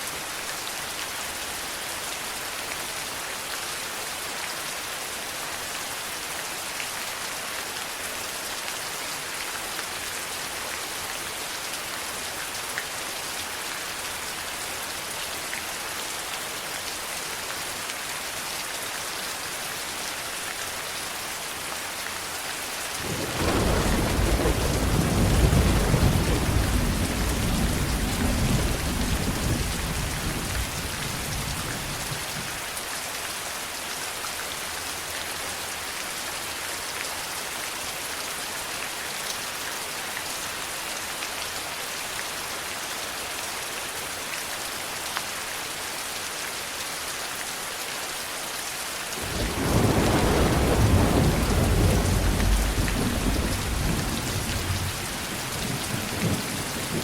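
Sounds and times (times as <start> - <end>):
heavy rain: 0.0 - 57.0
thunder rolling: 23.1 - 32.2, 49.2 - 57.0.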